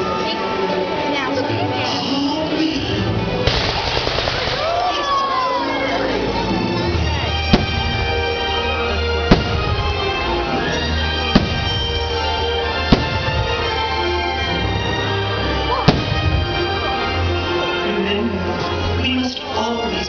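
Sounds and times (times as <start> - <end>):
music playing: 0.0 - 20.0
fireworks bangs: 3.4 - 5.2, 7.4 - 8.5, 9.2 - 14.0, 15.8 - 16.8.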